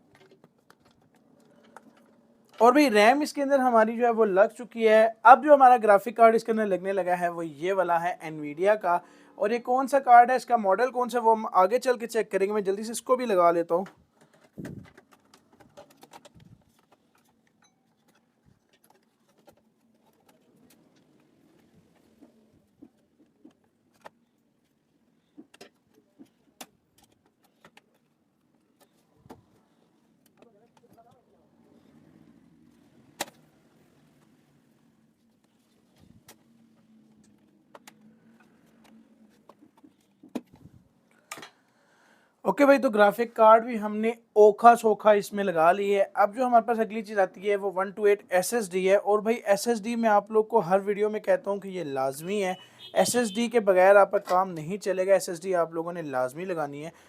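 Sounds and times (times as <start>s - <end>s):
clicks and knocks of hardware handling: 13.8s - 22.1s, 25.4s - 29.5s.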